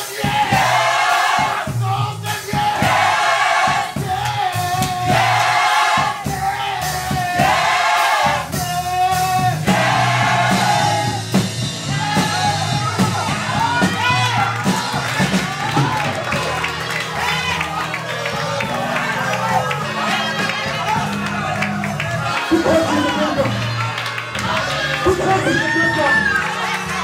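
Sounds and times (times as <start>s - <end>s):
choir singing: 0.0s - 12.7s
bass and drums: 0.0s - 27.0s.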